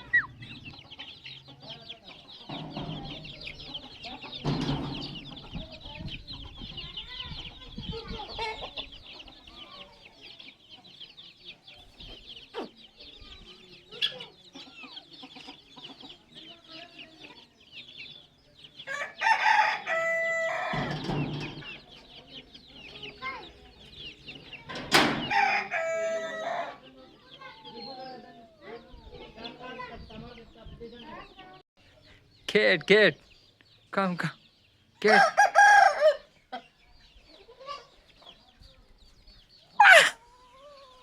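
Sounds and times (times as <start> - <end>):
high-pitched chirping: 0.0 - 0.8
chickens clucking: 0.0 - 41.0
rooster crowing: 18.9 - 20.9, 25.2 - 26.8, 35.1 - 36.3, 39.8 - 41.0.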